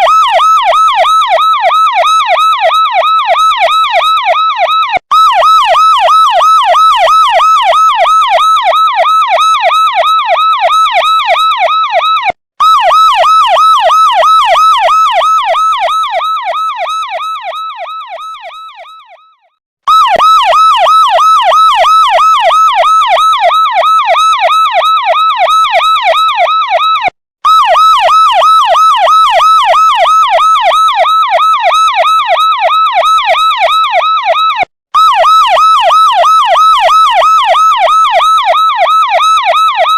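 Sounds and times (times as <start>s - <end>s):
police siren yelping: 0.0s - 39.9s.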